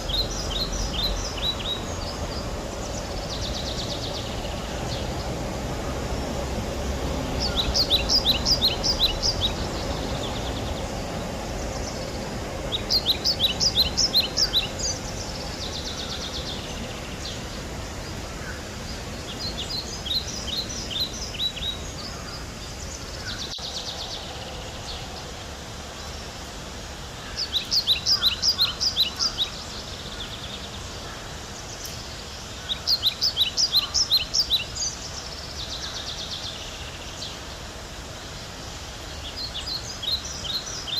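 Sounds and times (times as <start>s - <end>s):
outdoor background hiss: 0.0s - 40.9s
songbird singing high notes: 7.3s - 17.5s.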